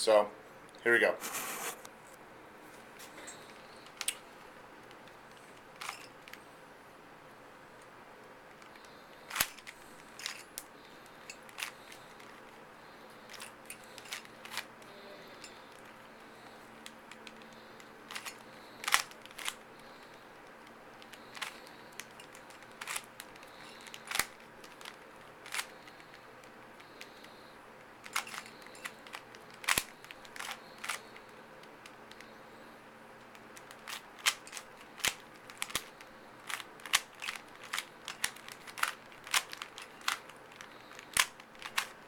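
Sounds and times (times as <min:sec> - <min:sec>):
faint steady hum: 0:00.0 - 0:42.0
plastic puzzle cube clicking: 0:11.5 - 0:12.4, 0:16.8 - 0:19.6, 0:20.9 - 0:27.3, 0:28.0 - 0:32.3, 0:33.2 - 0:42.0.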